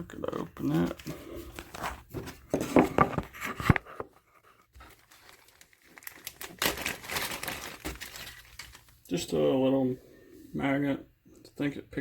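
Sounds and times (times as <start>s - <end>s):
packaging crinkling and tearing: 4.8s - 9.1s.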